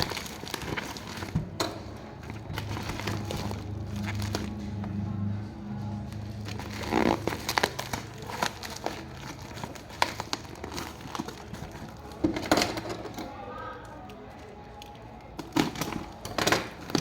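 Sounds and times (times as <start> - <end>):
packaging crinkling and rustling: 0.0 - 5.0, 6.1 - 13.2.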